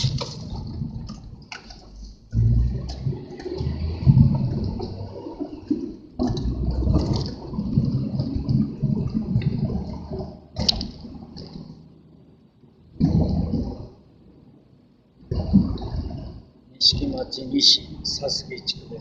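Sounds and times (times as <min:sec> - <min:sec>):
wind buffeting microphone: 0:00.0 - 0:11.3.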